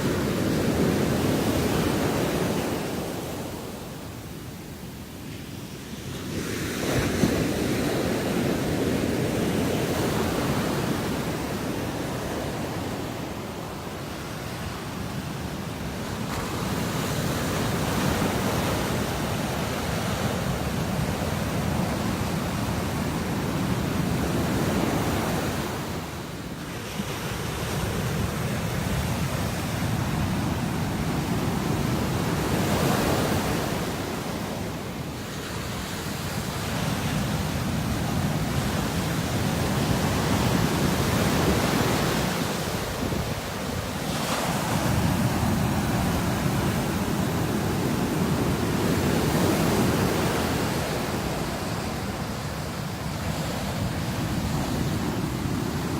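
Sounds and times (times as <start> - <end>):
wind on microphone: 27.0 - 55.9.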